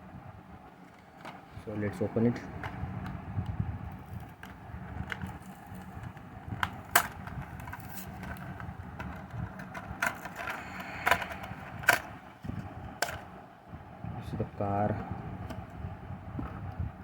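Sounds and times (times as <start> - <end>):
plastic blister pack crackling: 3.8 - 12.2.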